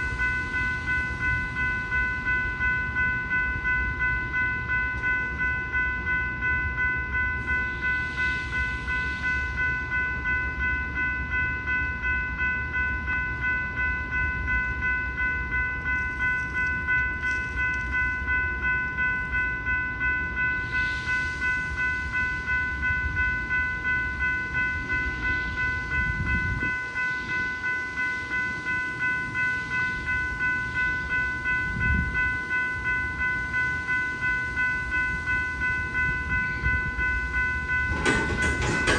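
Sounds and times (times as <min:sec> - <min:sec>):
freight train rumble: 0:00.0 - 0:38.9
railroad crossing bell ringing: 0:00.0 - 0:38.9.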